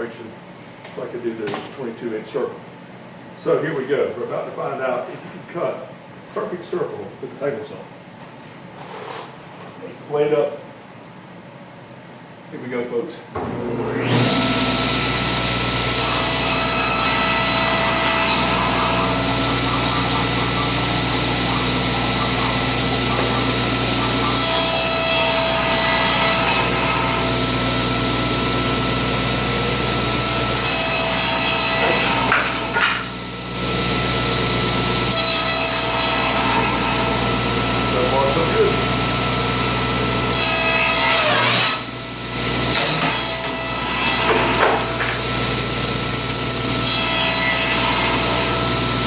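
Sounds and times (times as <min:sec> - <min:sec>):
table saw running: 0:13.4 - 0:49.0
saw blade cutting wood: 0:15.8 - 0:27.4, 0:30.2 - 0:33.2, 0:40.3 - 0:41.9, 0:42.6 - 0:48.9.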